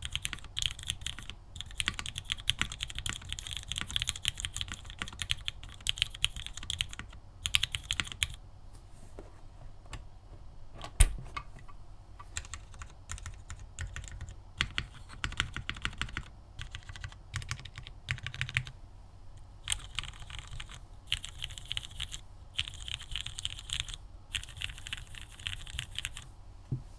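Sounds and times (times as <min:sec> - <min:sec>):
mechanical keyboard typing: 0:00.0 - 0:08.4, 0:12.2 - 0:18.7, 0:19.7 - 0:26.3.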